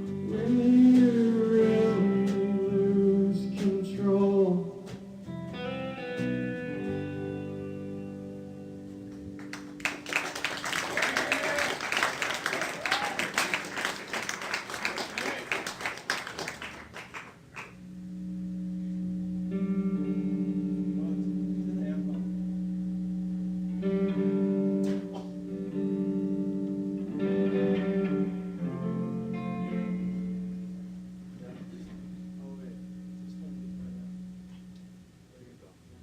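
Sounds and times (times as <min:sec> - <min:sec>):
audience applause: 0:09.4 - 0:17.8
instrument playing sustained chords: 0:17.8 - 0:36.0.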